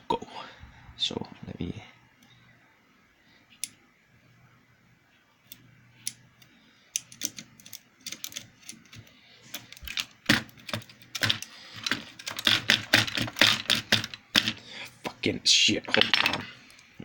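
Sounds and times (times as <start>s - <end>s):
sharp clicks and clatter: 7.0s - 14.6s.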